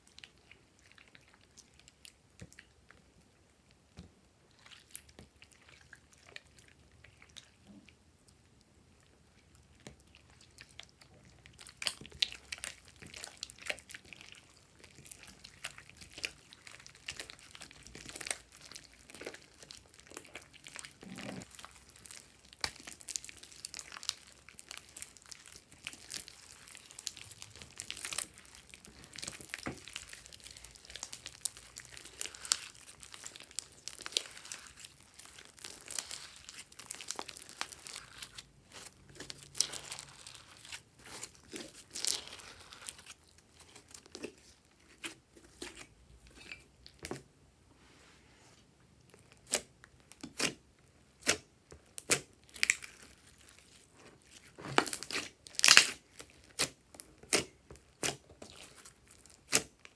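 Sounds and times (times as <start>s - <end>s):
slime squishing and crackling: 0.0s - 47.2s, 49.1s - 59.9s.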